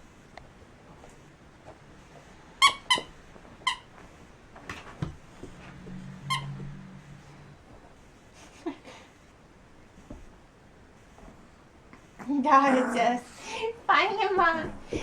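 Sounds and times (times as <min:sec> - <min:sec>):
squeaky dog toy squeaking: 0:02.6 - 0:03.9, 0:06.2 - 0:06.6
low steady drone: 0:05.4 - 0:07.9.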